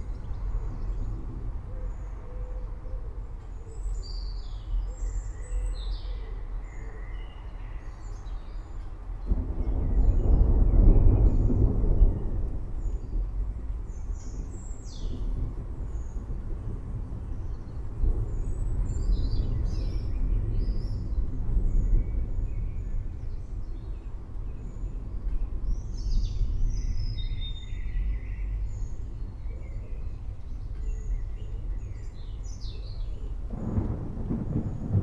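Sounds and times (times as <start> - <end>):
thunder rumbling: 9.2 - 35.0.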